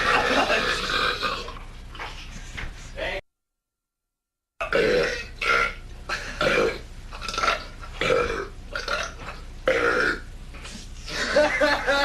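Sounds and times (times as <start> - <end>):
man burping: 0.0 - 1.6, 4.6 - 10.2.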